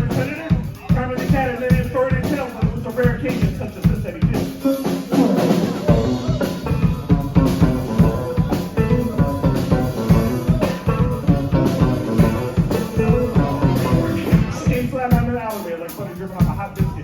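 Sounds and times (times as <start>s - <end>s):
bass guitar: 0.0s - 15.4s
drum kit beat: 0.0s - 17.0s
electric guitar: 4.7s - 14.9s.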